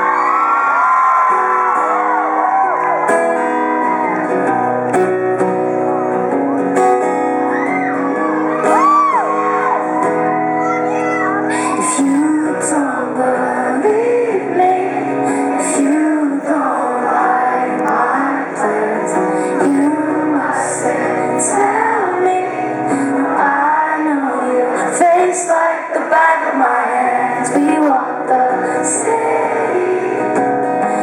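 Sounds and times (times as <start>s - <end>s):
live instrumental accompaniment: 0.0s - 31.0s
woman singing: 10.9s - 31.0s.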